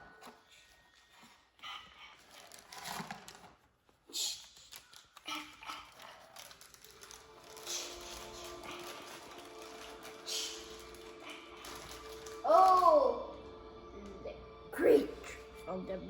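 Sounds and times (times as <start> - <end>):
packaging crinkling and tearing: 2.2 - 3.8, 4.4 - 13.0.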